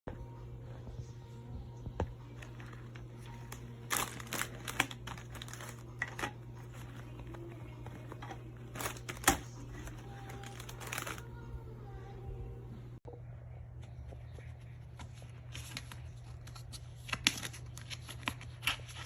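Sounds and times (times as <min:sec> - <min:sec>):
low hum: 0:00.1 - 0:15.5
packaging crinkling: 0:02.3 - 0:11.4.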